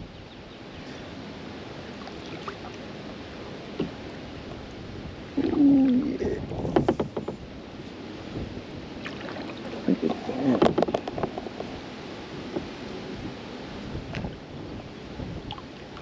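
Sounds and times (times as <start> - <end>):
wind on microphone: 0.0 - 16.0
loud creak or knock: 6.6 - 7.4, 10.5 - 11.7.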